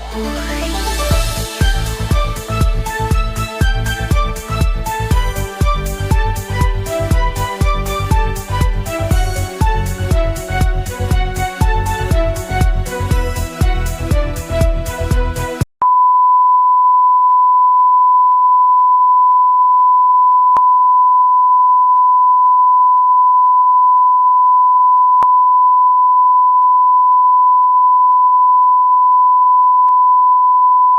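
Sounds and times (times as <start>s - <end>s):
background music: 0.0s - 15.6s.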